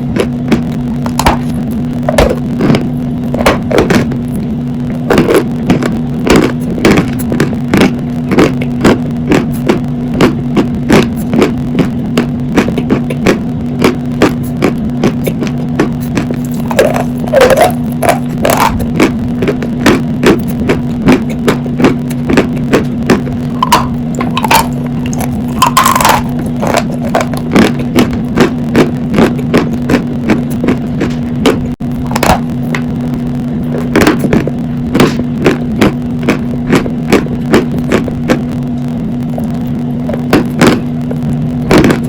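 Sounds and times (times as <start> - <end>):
low hum: 0.0 - 42.0
chalk crunching while chewed: 5.0 - 32.8, 33.7 - 38.4.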